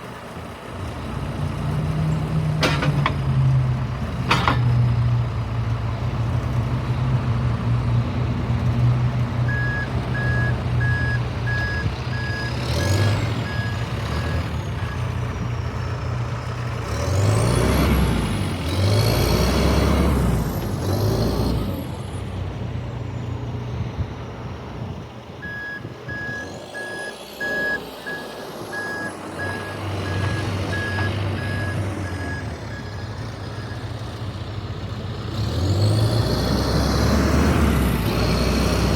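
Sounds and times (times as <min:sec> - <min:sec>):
diesel engine running: 0:00.0 - 0:38.9
engine revving with high whine: 0:09.5 - 0:15.0, 0:16.7 - 0:22.2, 0:25.8 - 0:33.7, 0:35.3 - 0:38.9
reverse alarm beeping: 0:25.4 - 0:33.9.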